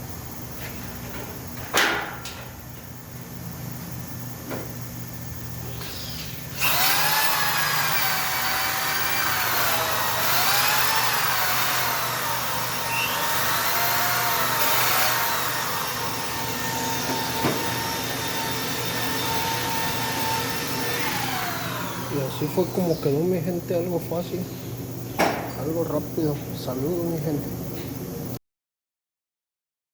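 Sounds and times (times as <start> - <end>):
low machine hum: 2.3 - 28.4
power tool whining on wheel rim: 5.8 - 23.1.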